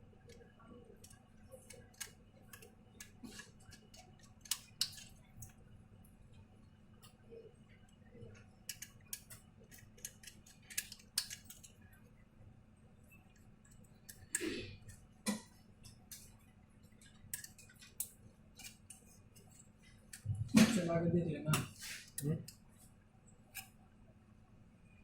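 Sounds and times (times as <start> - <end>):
tools clicking and tapping: 1.0 - 5.6, 8.4 - 11.8, 13.4 - 16.3, 16.9 - 20.3.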